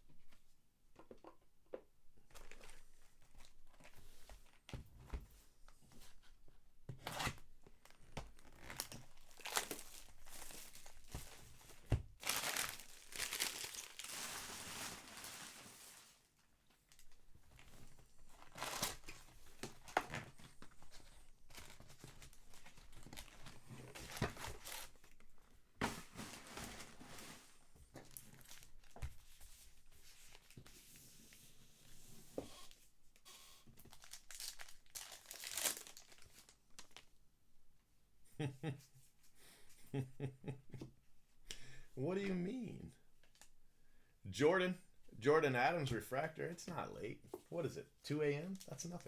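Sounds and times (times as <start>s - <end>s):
wrappers tearing and crinkling: 7.2s - 16.3s, 18.4s - 19.2s, 21.5s - 25.2s, 33.8s - 37.1s.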